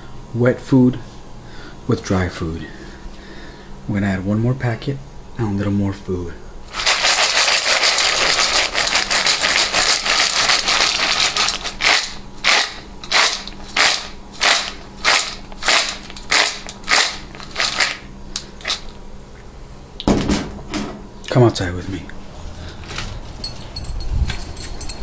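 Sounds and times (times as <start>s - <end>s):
kibble poured into bowl: 6.7s - 12.0s
rattling mixing strokes: 6.7s - 12.0s.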